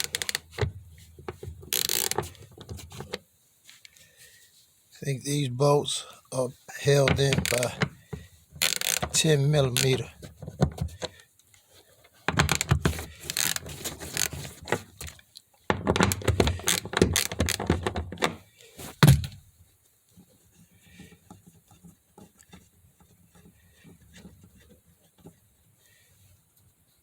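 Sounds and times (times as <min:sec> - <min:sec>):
faint handling sounds: 0:00.0 - 0:15.7, 0:16.3 - 0:27.0
ratchet wrench clicking: 0:01.7 - 0:02.2, 0:08.6 - 0:09.0
loud thunk: 0:19.0 - 0:19.4.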